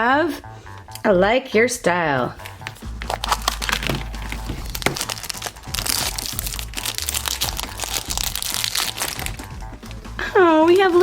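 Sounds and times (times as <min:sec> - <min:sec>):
background music with bass: 0:00.0 - 0:11.0
plastic packaging crinkling: 0:02.4 - 0:09.4.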